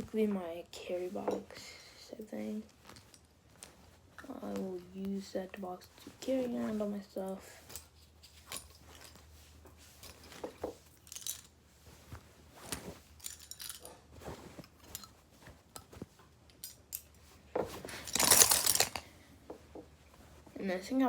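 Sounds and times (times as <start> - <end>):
light metallic clicks and clinks: 13.2 - 14.1, 14.7 - 17.3, 17.9 - 19.1
rattling clatter: 18.0 - 19.0.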